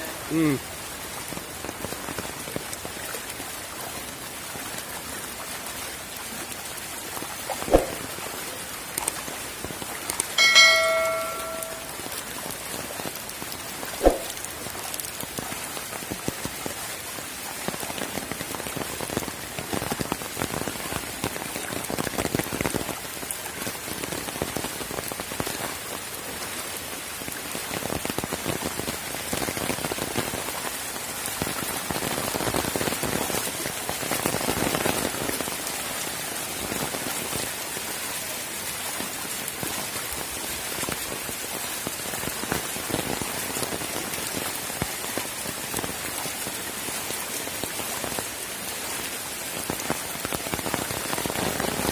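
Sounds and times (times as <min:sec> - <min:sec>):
rain falling on surfaces: 0:00.0 - 0:51.9
sharp knock: 0:07.7 - 0:08.0.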